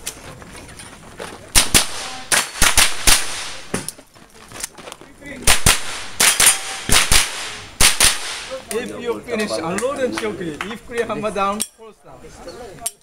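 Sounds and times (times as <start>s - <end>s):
rifle shots: 1.6s - 3.7s, 5.4s - 8.6s.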